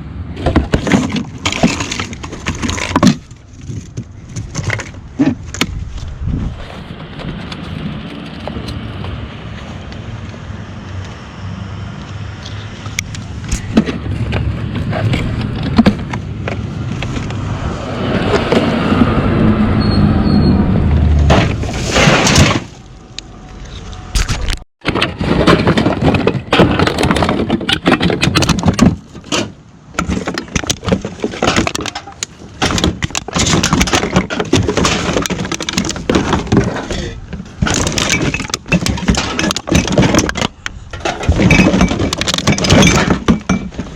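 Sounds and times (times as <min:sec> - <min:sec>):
low vehicle rumble: 0:00.0 - 0:24.6
scrap clattering and cracking: 0:00.4 - 0:09.9, 0:12.4 - 0:17.5, 0:21.3 - 0:43.9.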